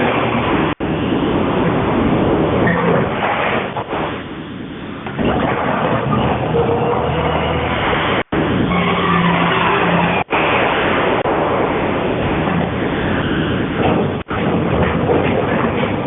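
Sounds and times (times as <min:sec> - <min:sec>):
rollers squealing and grinding: 0:02.6 - 0:03.9, 0:05.0 - 0:10.8, 0:12.2 - 0:16.0.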